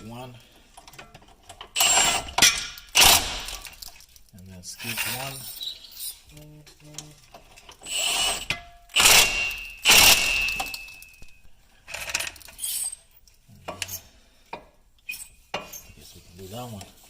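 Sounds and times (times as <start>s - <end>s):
impact wrench bursts: 1.7s - 3.9s, 7.8s - 11.2s.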